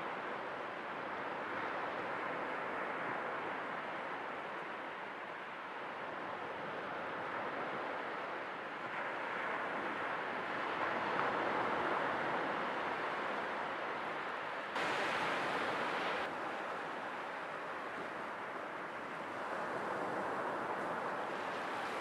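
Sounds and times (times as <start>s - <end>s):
sea waves surf hiss: 10.7s - 22.0s.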